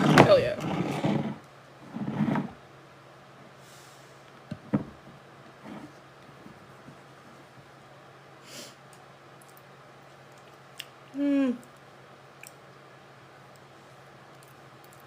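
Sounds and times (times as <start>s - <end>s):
soft breath: 3.6s - 4.3s
person humming: 11.1s - 11.7s.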